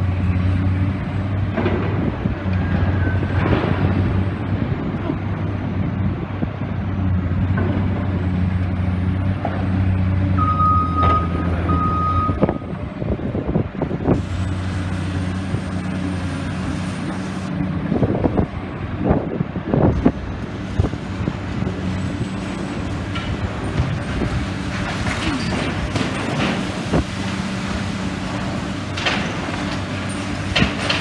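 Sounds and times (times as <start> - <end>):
clanks of metal and rubble: 0.0 - 5.3, 7.4 - 15.0, 20.8 - 31.0
excavator diesel engine running: 0.0 - 31.0
short warning beeps: 10.4 - 12.8.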